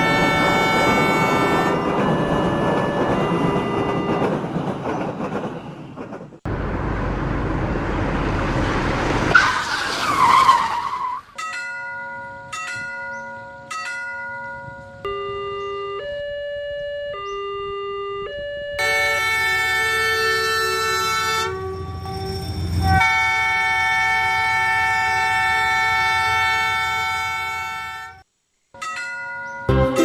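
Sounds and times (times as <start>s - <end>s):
rumble like passing train: 0.0s - 10.6s, 18.7s - 27.9s
car skidding with tyre squeal: 9.3s - 11.4s.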